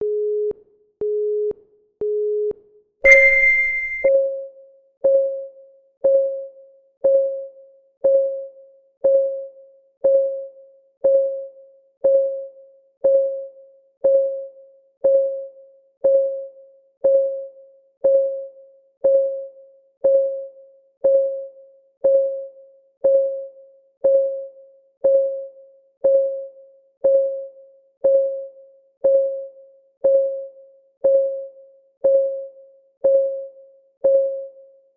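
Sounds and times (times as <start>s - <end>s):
higher louder beep: 3.1s - 4.1s
short low beeps: 3.1s - 4.1s
timer ticking: 3.1s - 4.1s.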